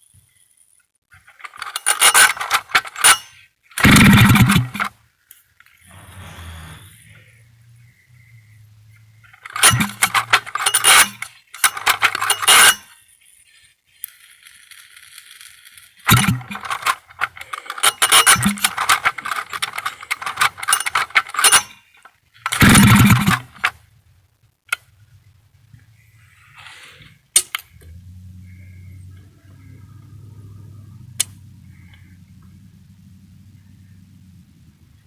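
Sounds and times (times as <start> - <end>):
chainsaw starting and cutting out: 3.8 - 4.8, 5.9 - 7.1.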